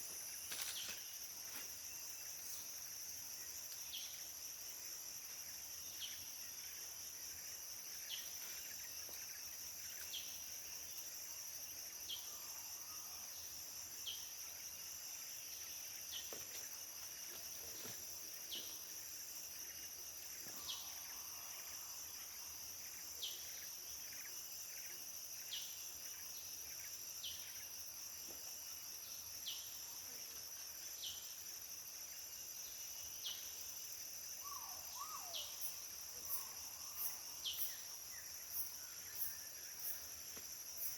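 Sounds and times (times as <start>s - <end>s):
insects droning: 0.0s - 40.9s.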